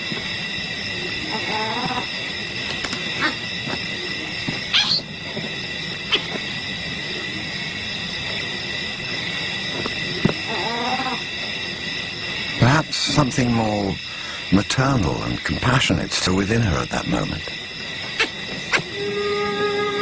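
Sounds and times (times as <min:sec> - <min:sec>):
high insect chorus: 0:00.0 - 0:20.0.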